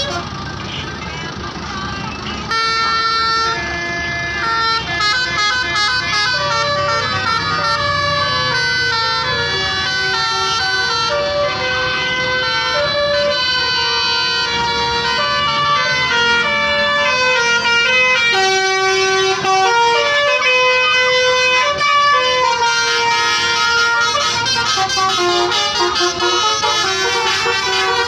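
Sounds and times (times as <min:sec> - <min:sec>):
low engine rumble: 0:00.0 - 0:28.0
musical bus horn tune: 0:00.0 - 0:28.0.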